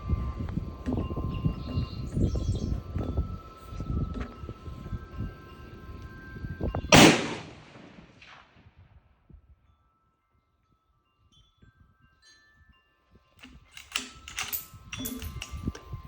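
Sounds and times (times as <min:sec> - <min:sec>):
rifle shot: 0:06.9 - 0:08.5
mechanical clicks and clatter: 0:13.4 - 0:15.8.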